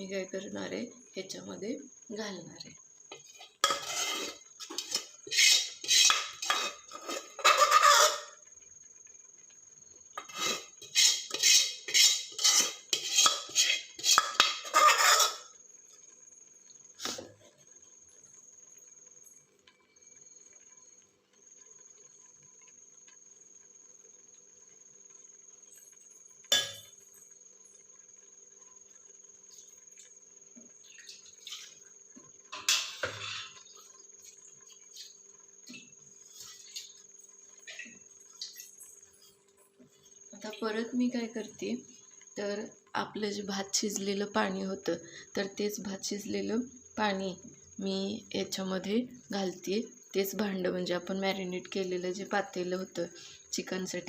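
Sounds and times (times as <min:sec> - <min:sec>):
metal spoon scraping steel pan: 0:03.1 - 0:08.4, 0:10.2 - 0:15.5, 0:32.6 - 0:33.6.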